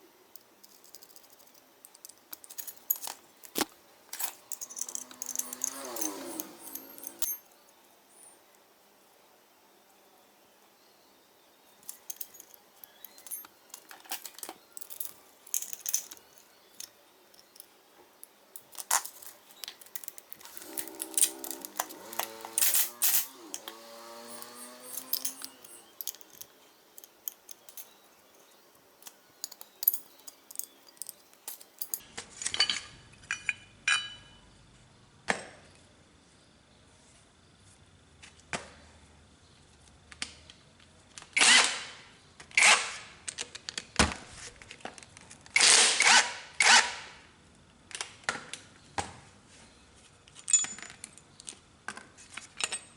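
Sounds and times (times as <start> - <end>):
metal tools clinking: 0.3 - 7.6, 11.7 - 32.0, 50.5 - 51.0.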